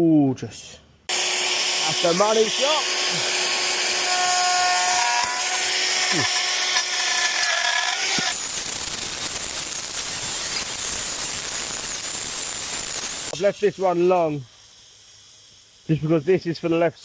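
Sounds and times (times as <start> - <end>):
power tool cutting timber: 1.1 - 13.4.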